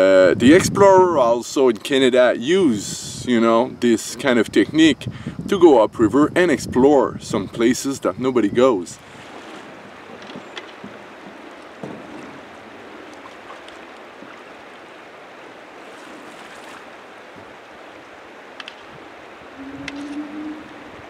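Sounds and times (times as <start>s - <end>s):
river water rushing: 9.0s - 21.0s
short low steady tone: 19.6s - 21.0s.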